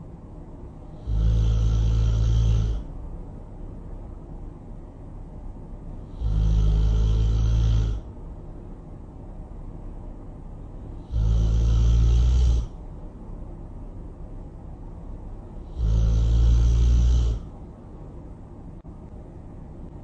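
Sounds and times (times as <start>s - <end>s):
quiet breathing: 0.7s - 3.0s, 15.5s - 17.7s
loud snoring: 0.8s - 2.9s, 6.0s - 8.1s, 10.9s - 12.8s, 15.6s - 17.6s.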